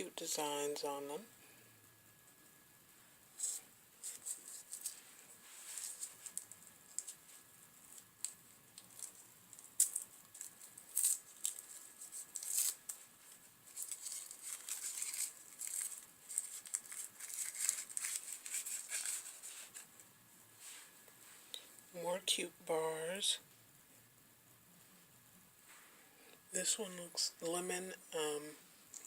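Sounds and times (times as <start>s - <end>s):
packaging crinkling and rustling: 3.4s - 20.1s.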